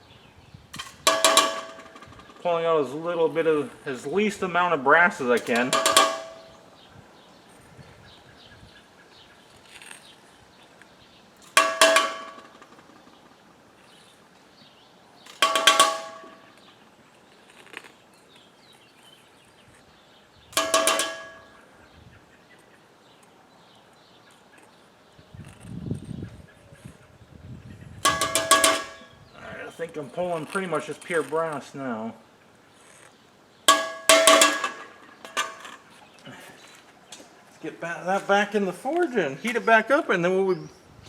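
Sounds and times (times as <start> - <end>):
ringing metal clanks: 0.8 - 2.6, 5.3 - 6.7, 11.4 - 13.3, 15.3 - 16.6, 20.6 - 21.6, 28.0 - 29.2, 33.7 - 35.8.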